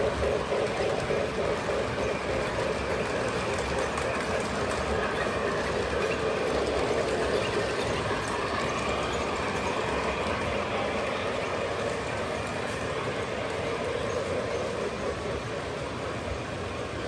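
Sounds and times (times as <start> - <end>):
wheels clicking over rail joints: 0.0 - 15.7
model train motors whirring: 0.0 - 17.0.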